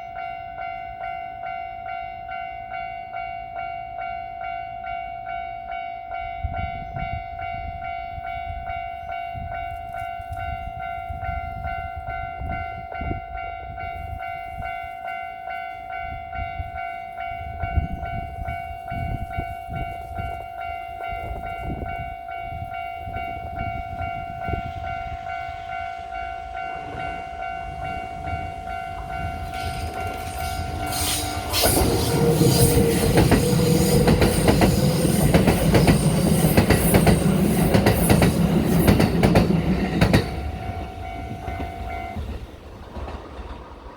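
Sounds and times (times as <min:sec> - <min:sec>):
train wheels on rails: 0:14.0 - 0:43.9.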